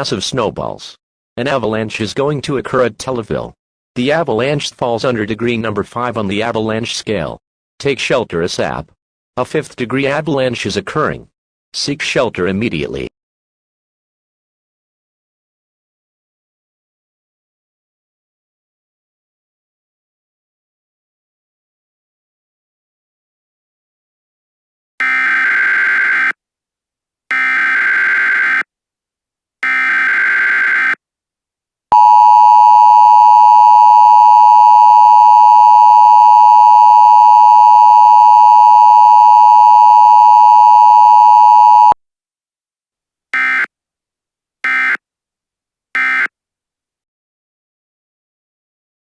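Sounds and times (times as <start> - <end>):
two-tone attention signal: 31.9 - 42.0.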